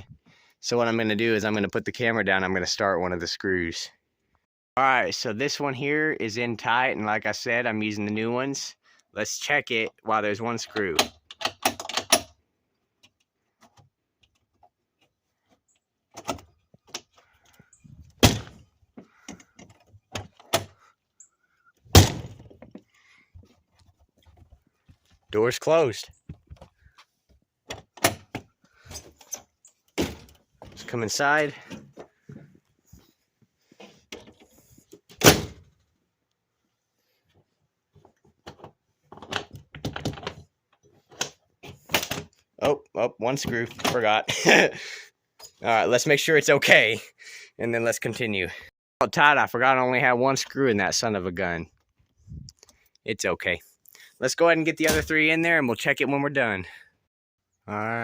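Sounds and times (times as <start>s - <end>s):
door handle and latch clicking: 11.0s - 12.3s
door thunks and knocks: 18.2s - 18.6s.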